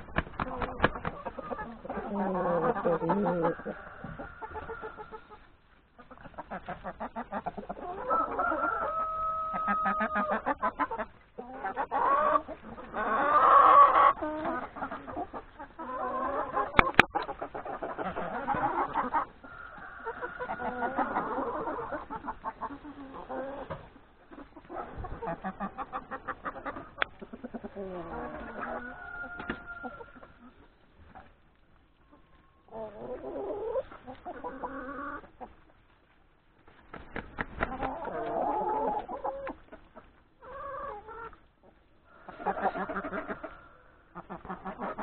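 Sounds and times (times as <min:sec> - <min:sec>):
hens clucking: 0:00.0 - 0:45.0
roosters crowing: 0:00.6 - 0:05.4, 0:07.8 - 0:10.9, 0:18.1 - 0:22.2, 0:27.8 - 0:30.5, 0:42.0 - 0:44.2.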